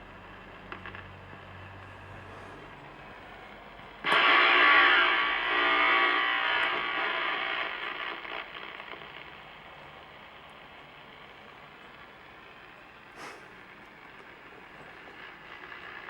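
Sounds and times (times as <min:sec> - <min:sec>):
radio speaker buzz: 0:04.1 - 0:09.2.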